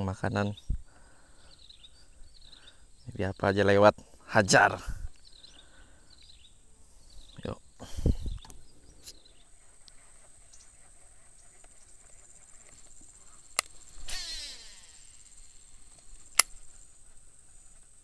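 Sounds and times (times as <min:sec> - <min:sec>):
insects droning: 0:00.0 - 0:18.0
sharp clicks: 0:13.5 - 0:14.8, 0:15.9 - 0:16.7
falling whirr: 0:13.8 - 0:16.5.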